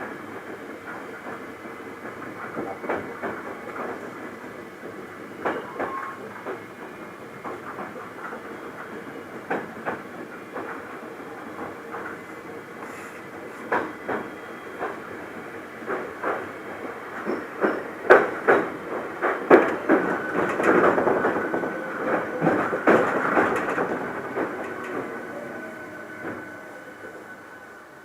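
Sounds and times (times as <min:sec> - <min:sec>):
train wheels clacking on rail joints: 0:00.0 - 0:27.5
train rumble: 0:00.0 - 0:28.0.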